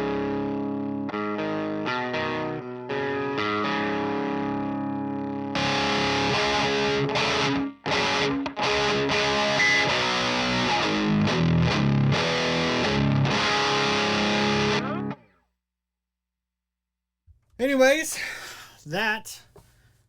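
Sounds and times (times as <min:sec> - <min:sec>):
heavily distorted electric guitar riffing: 0:00.0 - 0:15.2.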